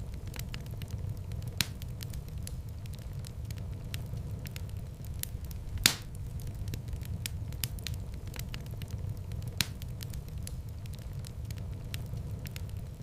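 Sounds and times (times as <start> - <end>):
low rumble of flames: 0.0 - 13.0
wood fire crackling: 0.0 - 13.0
loud sharp fire pop: 5.8 - 6.2.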